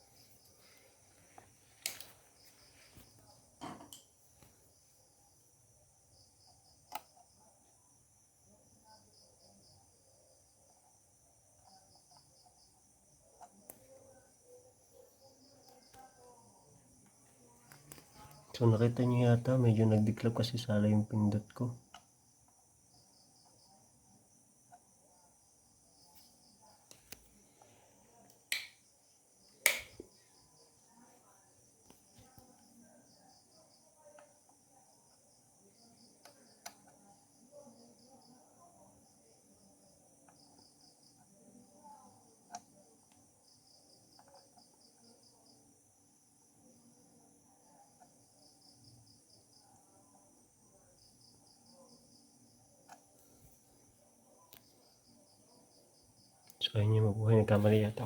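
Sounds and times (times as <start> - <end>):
crickets chirping: 0.0 - 58.0
sharp click: 29.7 - 30.0.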